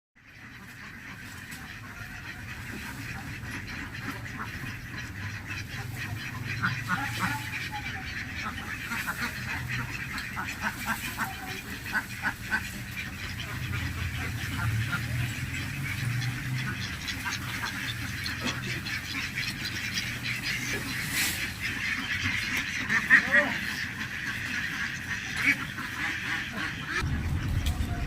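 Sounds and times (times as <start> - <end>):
ducks quacking: 0.2 - 28.0.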